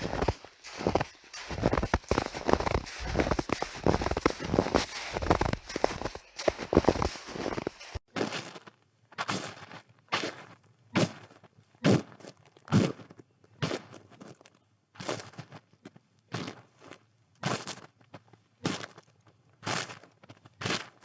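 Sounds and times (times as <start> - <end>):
footsteps crunching through snow: 0.0 - 8.0.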